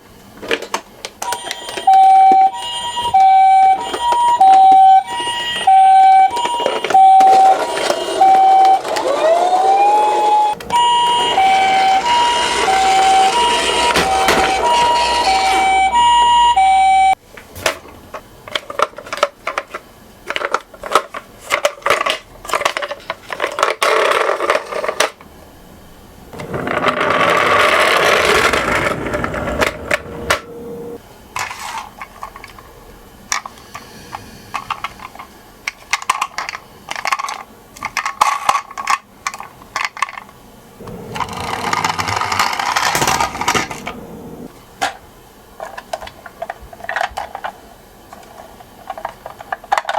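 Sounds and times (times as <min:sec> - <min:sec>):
toy cars rattling along track: 0:00.4 - 0:15.9, 0:18.5 - 0:25.2, 0:26.4 - 0:30.0, 0:34.5 - 0:40.4, 0:41.1 - 0:44.0, 0:45.6 - 0:49.9
toy cars clicking and clacking: 0:00.4 - 0:16.0, 0:18.1 - 0:25.2, 0:33.3 - 0:40.4, 0:41.1 - 0:44.0, 0:45.6 - 0:49.9
toy electronic siren: 0:01.2 - 0:17.2.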